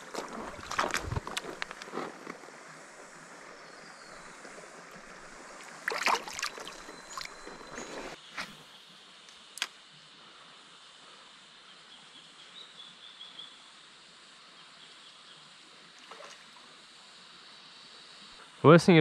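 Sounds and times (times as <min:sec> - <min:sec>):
steady high hiss: 0:00.0 - 0:19.0
faint bird chirps: 0:03.6 - 0:04.4, 0:06.3 - 0:08.9.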